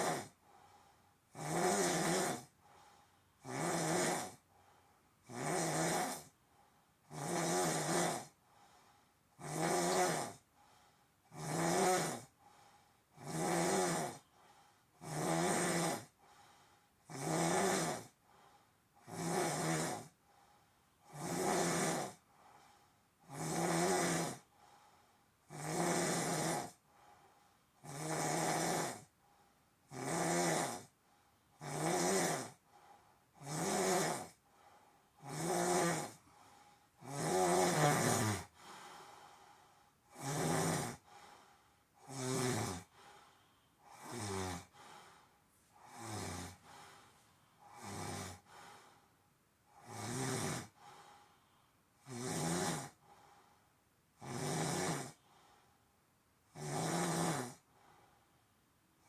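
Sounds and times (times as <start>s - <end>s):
person snoring loudly: 0.0s - 0.4s, 1.3s - 2.5s, 3.4s - 4.4s, 5.2s - 6.3s, 7.1s - 8.4s, 9.4s - 10.4s, 11.3s - 12.3s, 13.2s - 14.2s, 15.0s - 16.2s, 17.0s - 18.2s, 19.0s - 20.2s, 21.0s - 22.2s, 23.2s - 24.5s, 25.5s - 26.8s, 27.8s - 29.1s, 29.9s - 30.9s, 31.6s - 32.6s, 33.4s - 34.4s, 35.2s - 36.3s, 37.0s - 38.8s, 40.1s - 41.2s, 42.0s - 43.1s, 43.8s - 45.0s, 45.8s - 46.9s, 47.6s - 48.7s, 49.7s - 50.9s, 52.0s - 53.0s, 54.2s - 55.2s, 56.5s - 57.6s.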